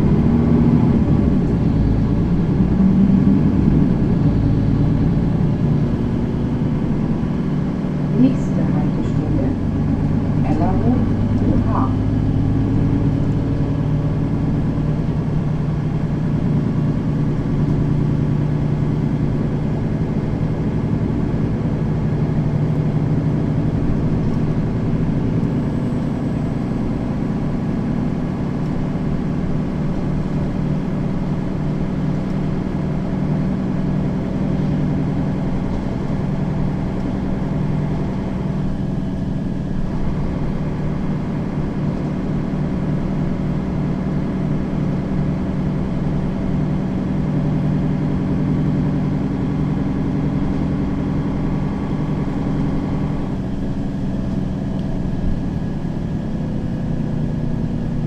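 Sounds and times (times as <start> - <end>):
bus diesel engine running: 0.0 - 58.0.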